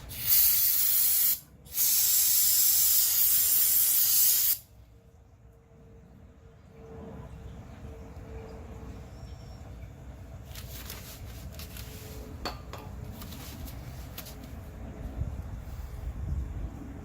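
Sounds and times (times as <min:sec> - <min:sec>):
steady low rumble: 0:04.6 - 0:17.0.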